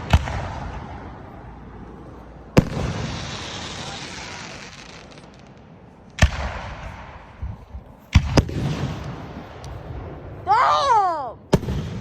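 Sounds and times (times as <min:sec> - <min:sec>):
fireworks bursting with bangs: 0:00.0 - 0:01.2, 0:02.5 - 0:07.3, 0:08.1 - 0:10.1, 0:11.5 - 0:12.0
crackling hiss of fireworks: 0:00.0 - 0:10.0.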